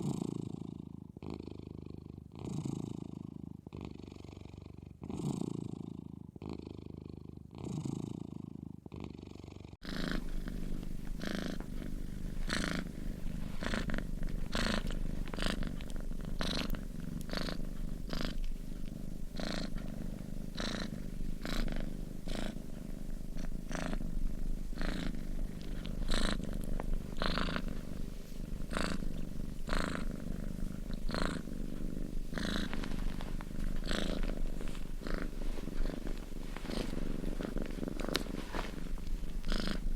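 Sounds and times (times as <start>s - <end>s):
cat snoring or purring: 0.0s - 39.9s.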